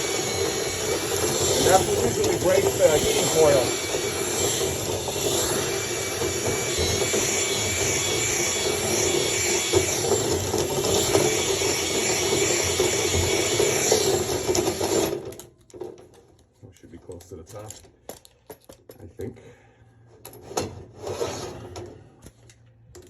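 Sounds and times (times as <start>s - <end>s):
vacuum cleaner running: 0.0s - 15.3s.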